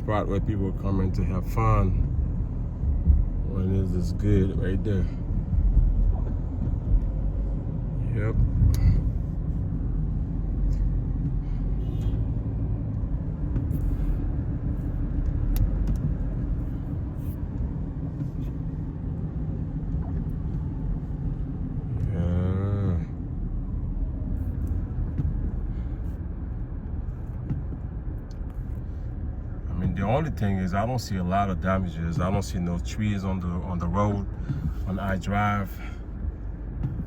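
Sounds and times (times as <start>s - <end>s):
car road and engine rumble: 0.0s - 37.0s.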